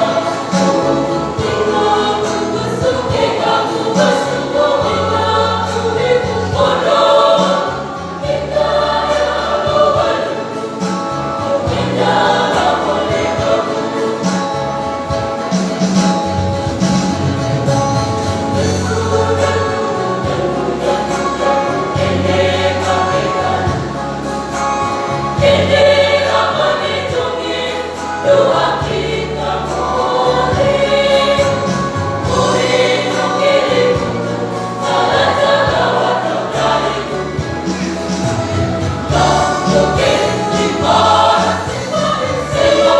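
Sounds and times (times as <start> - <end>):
choir singing in parts: 0.0 - 42.9.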